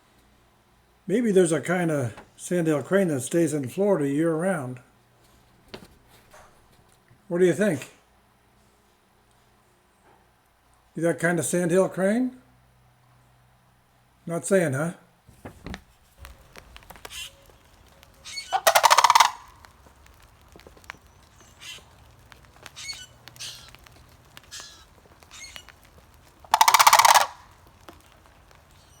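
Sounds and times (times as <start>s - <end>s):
crane rattling call: 15.4s - 29.0s
short bird calls: 16.2s - 29.0s.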